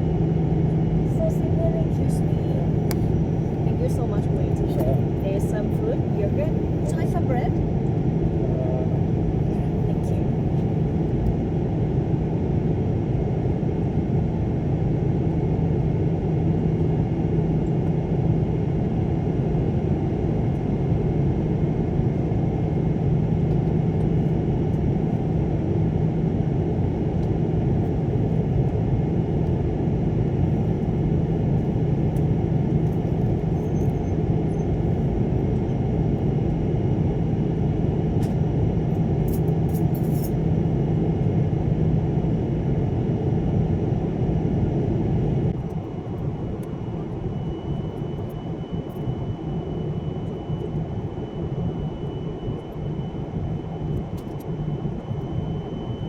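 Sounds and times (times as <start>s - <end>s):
vehicle cabin rumble: 1.0s - 11.4s, 30.2s - 35.8s.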